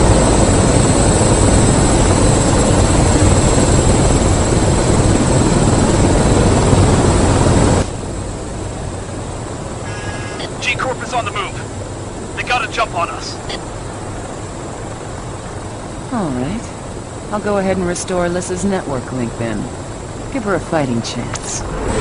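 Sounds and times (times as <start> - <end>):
aircraft engine rushing: 0.0 - 22.0
high whine: 9.8 - 16.4.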